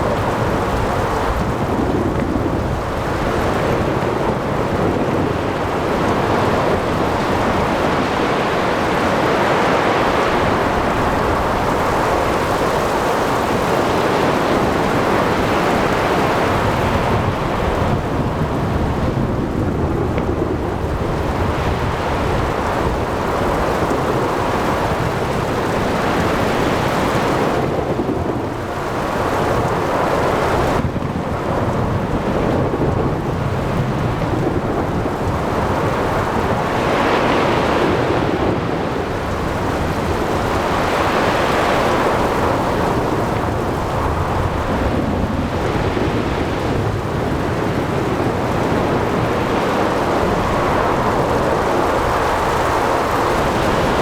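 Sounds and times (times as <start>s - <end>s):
heavy rain: 0.0s - 54.0s
wind: 0.0s - 54.0s
waves breaking: 31.6s - 54.0s.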